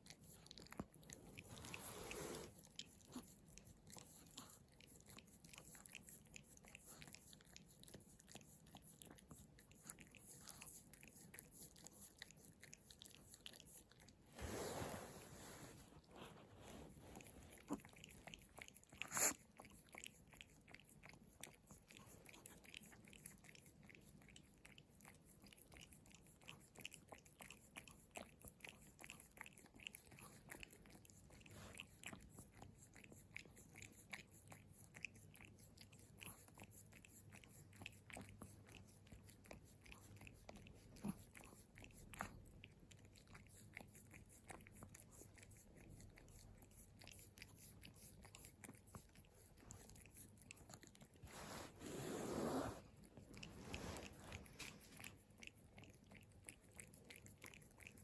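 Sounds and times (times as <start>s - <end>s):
dog licking wet mouth clicks: 17.6s - 51.3s, 52.9s - 58.0s.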